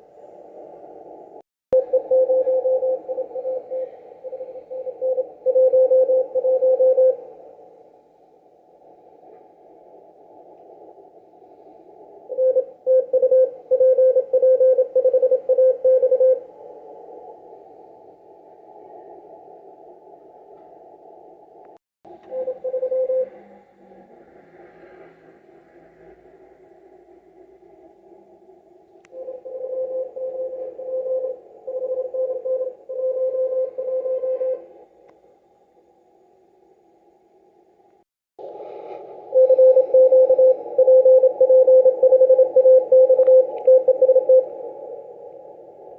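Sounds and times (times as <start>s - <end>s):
morse code tone: 22.3s - 23.5s, 29.1s - 34.7s, 39.4s - 44.5s
morse code beeps: 39.4s - 44.5s
click: 43.2s - 43.8s.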